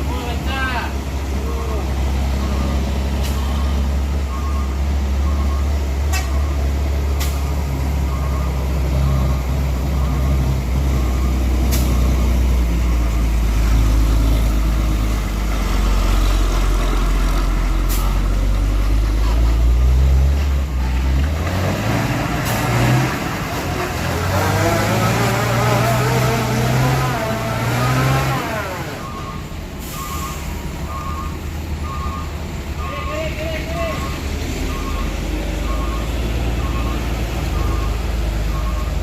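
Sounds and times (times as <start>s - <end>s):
truck diesel engine running: 21.9s - 39.0s.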